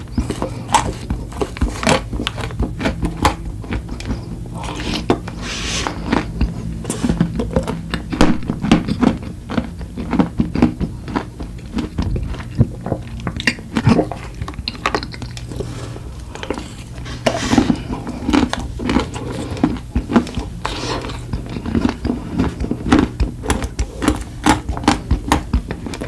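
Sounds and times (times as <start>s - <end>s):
person chewing: 0.0s - 26.0s.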